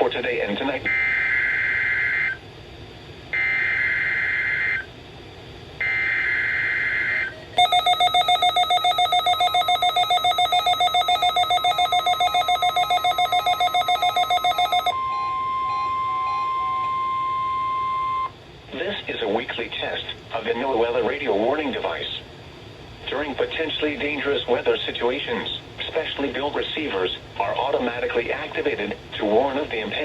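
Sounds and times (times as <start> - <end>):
steady warning tone: 3.3 - 5.0, 5.8 - 18.4
rapidly pulsing alarm beeps: 3.4 - 4.9, 5.8 - 18.3.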